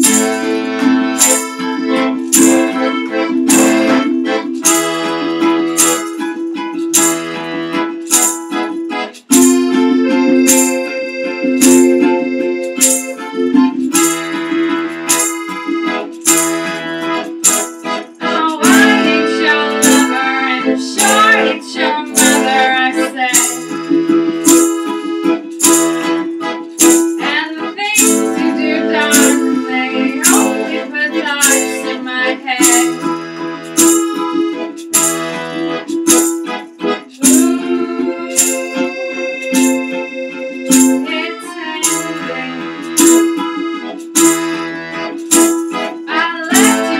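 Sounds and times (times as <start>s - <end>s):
steady beat: 0.0s - 27.4s
accordion chords: 0.0s - 46.9s
wavering melody line: 9.8s - 16.3s.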